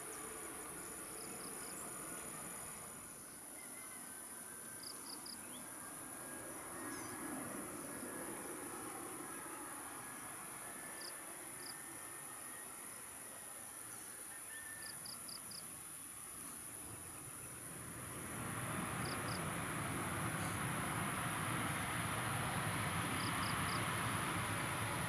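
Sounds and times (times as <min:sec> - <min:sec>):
distant airliner rumbling: 0:17.7 - 0:25.0.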